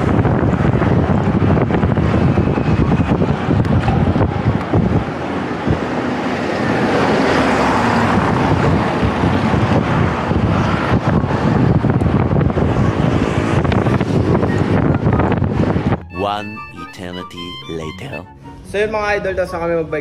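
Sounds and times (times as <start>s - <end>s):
wind buffeting microphone: 0.0s - 7.2s, 7.8s - 16.0s.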